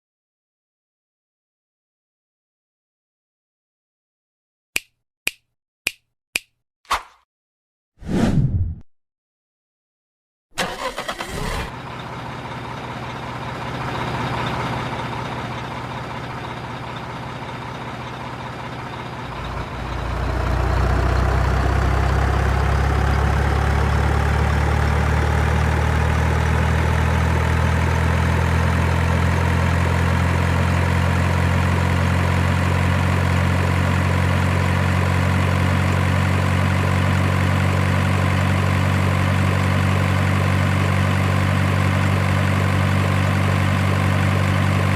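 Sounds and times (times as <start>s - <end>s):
diesel truck engine idling: 10.6s - 44.9s.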